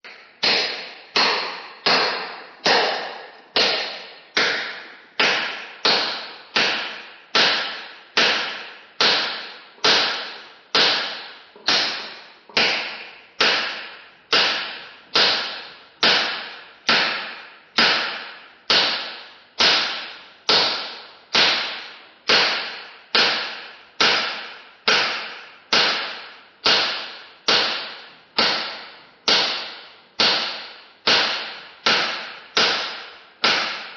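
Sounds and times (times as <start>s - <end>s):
hammer blows: 0.0s - 33.9s.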